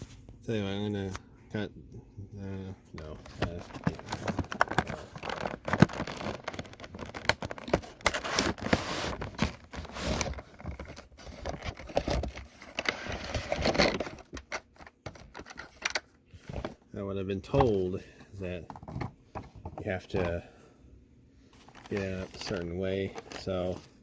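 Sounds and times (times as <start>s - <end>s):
packaging rustling and scraping: 3.0s - 16.8s, 21.5s - 24.0s.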